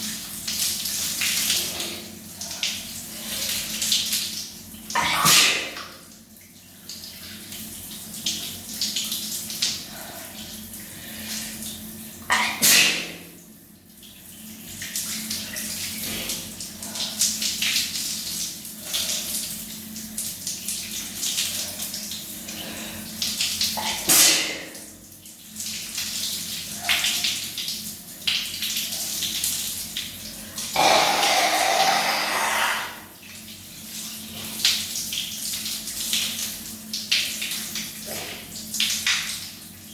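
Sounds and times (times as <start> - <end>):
loud sneezes: 5.0 - 5.8, 12.3 - 13.3, 23.9 - 24.8, 30.8 - 33.1
shower water spraying: 5.0 - 5.9, 12.3 - 13.3, 23.8 - 24.9, 30.8 - 33.1
louder water rush: 30.8 - 33.0.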